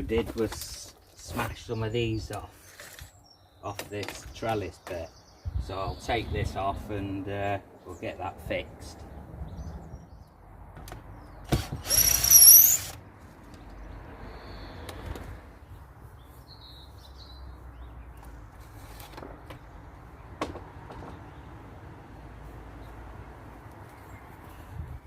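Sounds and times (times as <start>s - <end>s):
cordless drill motor whine: 11.8s - 13.0s.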